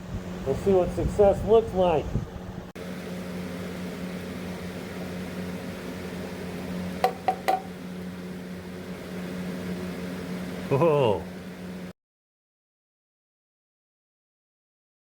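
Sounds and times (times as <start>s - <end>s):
forge humming: 0.0s - 11.9s.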